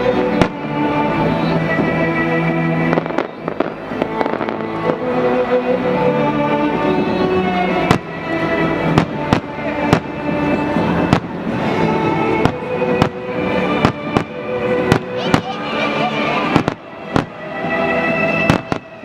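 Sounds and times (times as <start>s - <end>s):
music playing: 0.0s - 19.0s
fireworks bangs: 2.8s - 5.2s, 8.9s - 19.0s.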